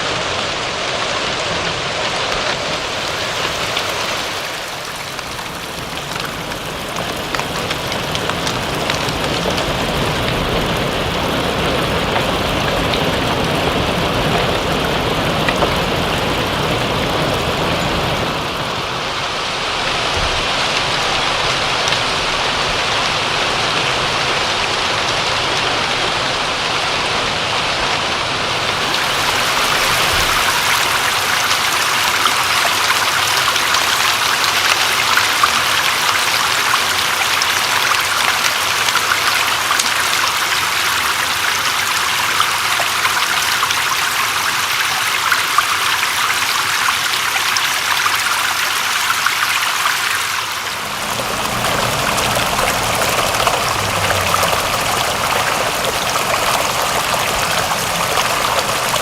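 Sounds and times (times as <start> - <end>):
running water: 0.0 - 59.0
steady rain: 0.0 - 59.0.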